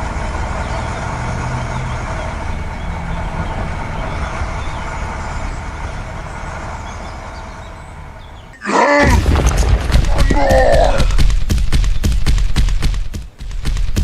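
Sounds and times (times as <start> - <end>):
truck engine running: 0.0 - 8.6.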